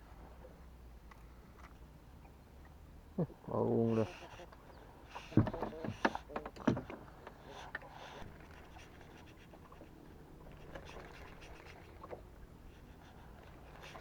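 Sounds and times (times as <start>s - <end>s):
faint scratching and rustling: 3.9s - 14.0s.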